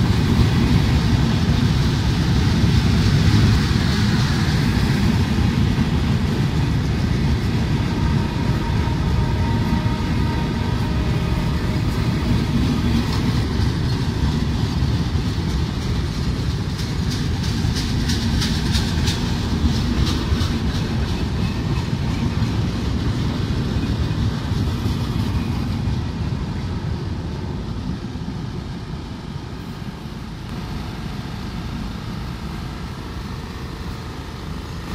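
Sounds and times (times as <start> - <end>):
wheels clicking over rail joints: 0.0 - 26.0
train coaches rumbling past: 0.0 - 34.9.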